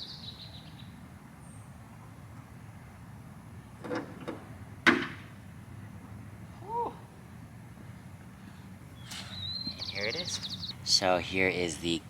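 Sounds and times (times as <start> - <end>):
rising and falling chirp: 9.0 - 11.0.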